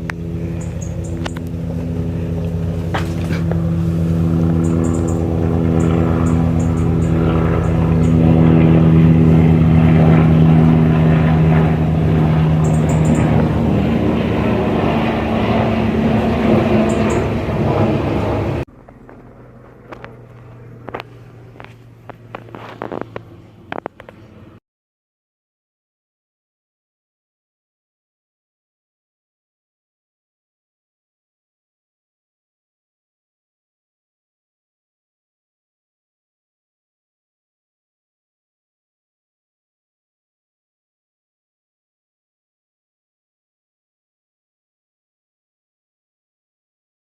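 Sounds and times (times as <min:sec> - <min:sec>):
faint hum: 0:00.0 - 0:24.6
helicopter flying past: 0:00.0 - 0:24.6.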